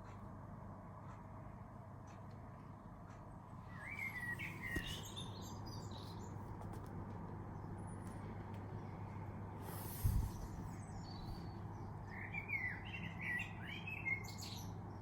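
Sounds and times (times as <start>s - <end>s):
low outdoor background noise: 0.0s - 15.0s
small bird chirping: 3.7s - 6.4s, 10.0s - 15.0s.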